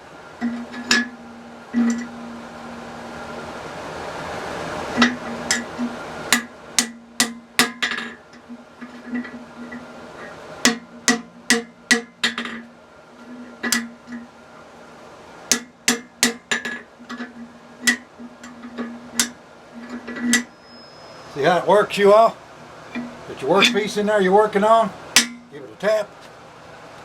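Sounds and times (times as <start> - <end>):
steady low hum: 0.0 - 27.0
hammer striking steel: 5.0 - 8.2, 10.6 - 12.7, 15.5 - 18.1, 25.2 - 25.5.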